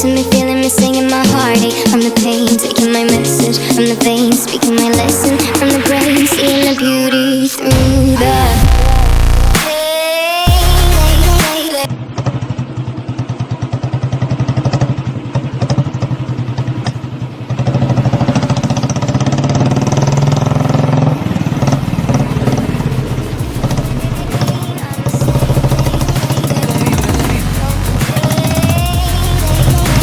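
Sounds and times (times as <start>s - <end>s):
vehicle engine droning: 10.5s - 30.0s.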